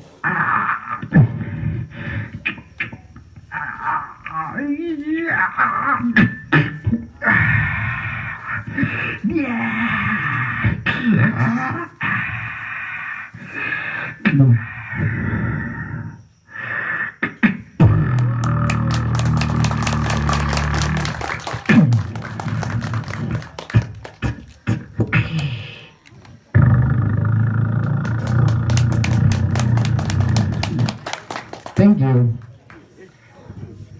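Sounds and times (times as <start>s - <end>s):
beatboxing vocal effects: 17.2s - 31.1s.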